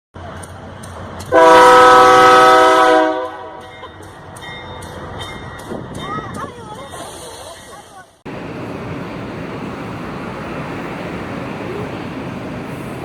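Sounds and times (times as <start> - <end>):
passing train rumble: 0.2 - 13.0
train horn: 1.3 - 3.6.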